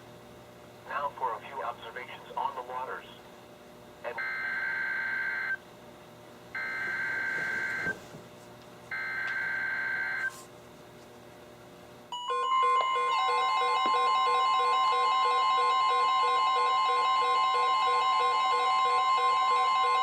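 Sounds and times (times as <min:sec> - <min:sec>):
radio alarm beeps: 0:04.1 - 0:05.6, 0:06.6 - 0:08.0, 0:09.0 - 0:10.3.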